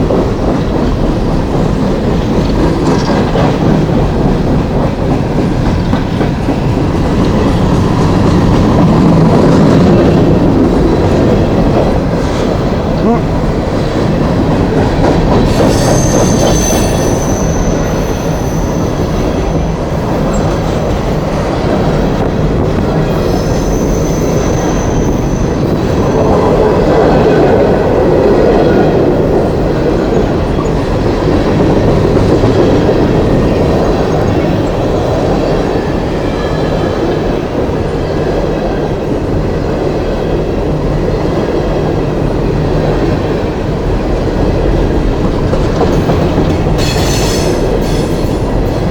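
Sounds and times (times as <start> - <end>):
train wheels rumbling on rail: 0.0 - 48.9
high wheel squeals: 15.4 - 20.9, 23.2 - 26.5.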